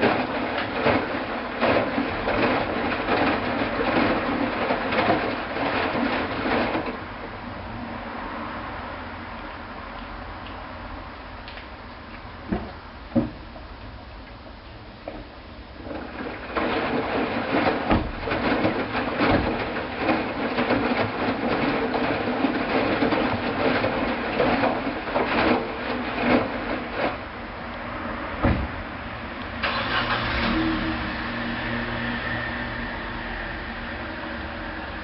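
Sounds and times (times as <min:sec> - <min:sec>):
washing machine running: 0:00.0 - 0:35.0
irregular knocks: 0:12.5 - 0:13.7.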